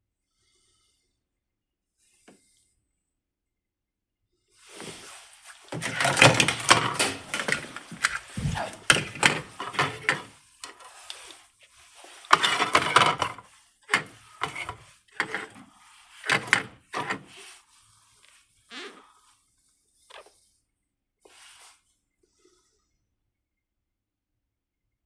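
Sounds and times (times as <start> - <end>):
plastic clicks and scraping: 5.7 - 11.4, 12.2 - 17.3.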